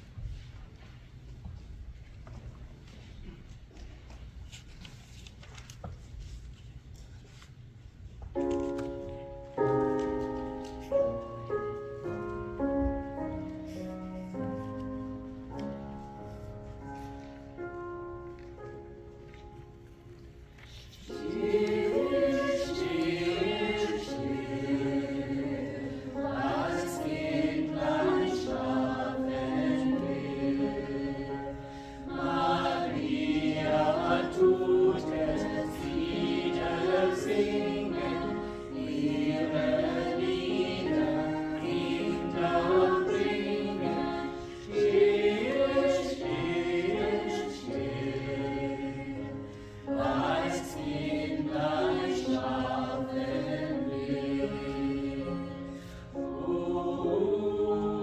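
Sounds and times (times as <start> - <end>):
group singing a hymn: 21.0 - 58.0.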